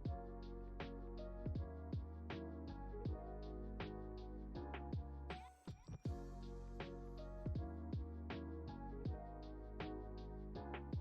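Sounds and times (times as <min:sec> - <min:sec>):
kick drums: 0:00.0 - 0:00.2, 0:01.5 - 0:02.1, 0:04.9 - 0:05.1, 0:05.7 - 0:06.2, 0:07.5 - 0:08.1.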